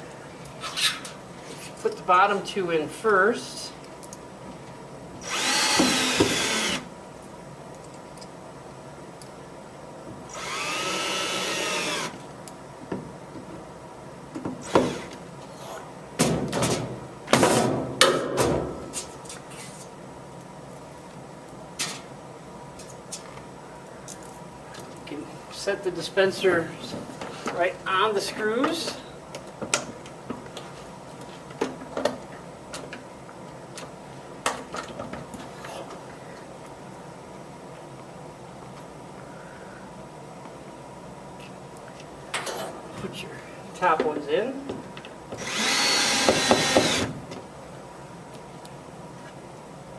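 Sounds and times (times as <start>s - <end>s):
cordless drill whining: 5.2s - 6.9s, 10.3s - 12.2s, 45.4s - 47.1s.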